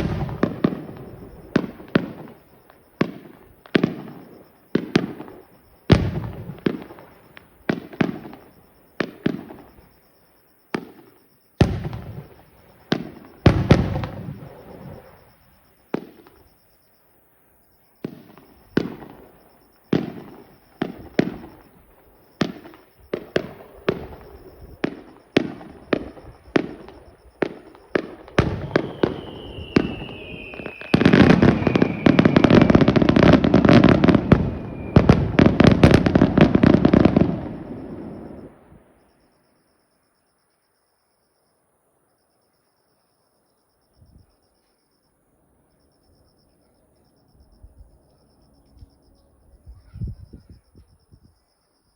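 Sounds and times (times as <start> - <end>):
firework bangs with echo: 0.0 - 2.4, 10.7 - 16.4, 19.9 - 21.7, 22.4 - 38.7
fireworks crackling barrage: 0.0 - 16.6, 18.0 - 39.0
falling whistle: 28.3 - 39.1.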